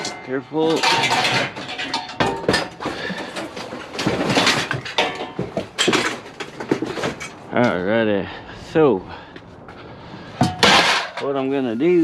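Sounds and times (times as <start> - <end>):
scrap steel clanking: 0.0 - 7.8, 10.2 - 12.0.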